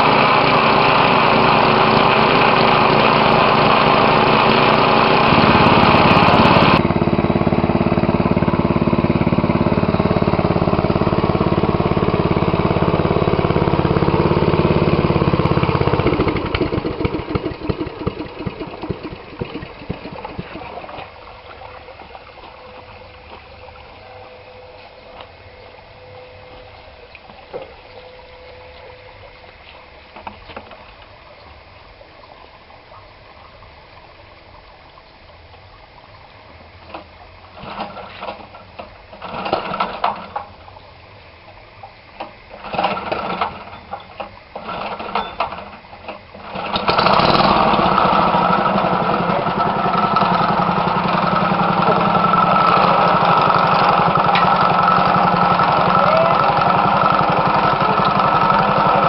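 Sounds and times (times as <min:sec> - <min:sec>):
small engine starting and running: 0:00.0 - 0:29.2, 0:37.0 - 0:40.6, 0:42.5 - 0:59.0.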